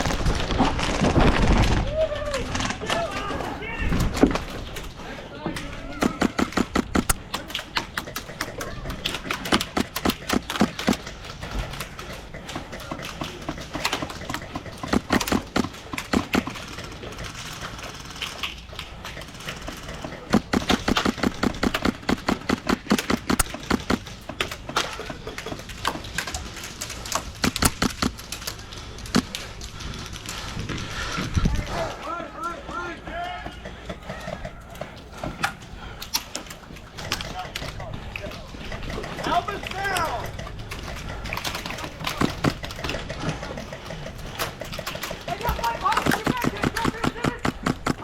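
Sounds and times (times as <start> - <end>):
airsoft guns firing bursts: 5.8 - 31.2, 38.6 - 48.0.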